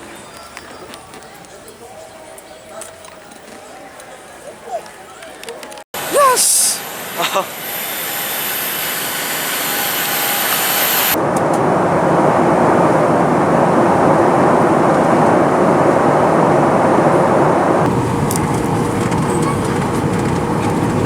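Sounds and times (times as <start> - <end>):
jet airliner cabin roar: 6.0 - 21.0.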